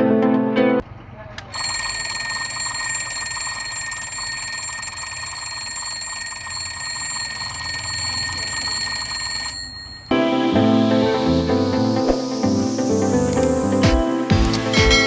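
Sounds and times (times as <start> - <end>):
alarm clock buzzing: 1.6 - 10.3.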